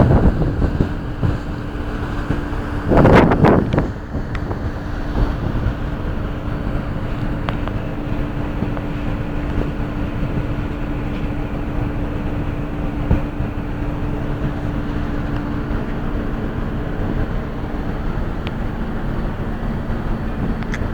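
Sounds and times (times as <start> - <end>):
boat engine running: 0.0 - 20.9
rushing noise: 0.0 - 20.9.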